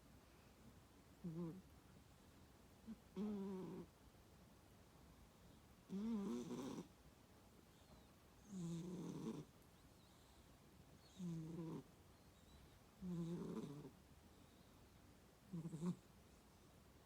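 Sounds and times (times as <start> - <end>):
cat snoring: 1.2 - 1.6, 2.9 - 3.9, 5.9 - 6.9, 8.4 - 9.5, 11.0 - 11.9, 13.0 - 14.0, 15.5 - 16.0.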